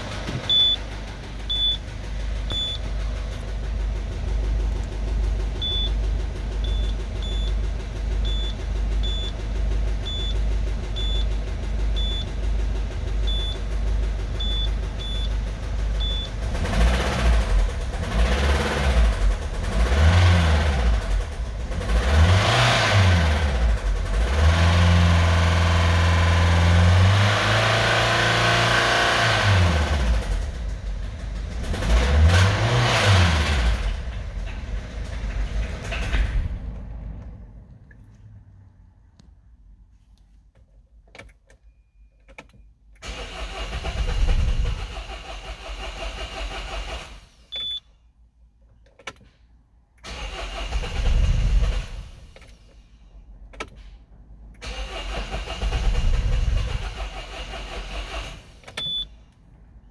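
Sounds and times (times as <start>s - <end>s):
engine knocking: 0.0s - 27.8s, 54.6s - 59.0s
diesel engine idling and revving: 0.0s - 41.3s, 42.9s - 47.8s, 48.9s - 59.9s
short electronic beeps: 0.5s - 0.8s, 1.5s - 1.8s, 2.5s - 2.8s, 47.5s - 47.8s.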